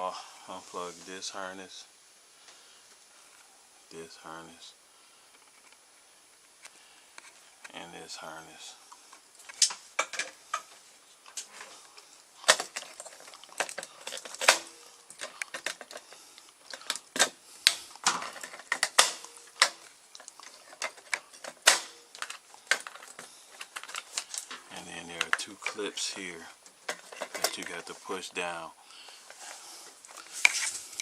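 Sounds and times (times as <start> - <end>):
plastic connectors clicking and snapping: 12.4 - 24.6.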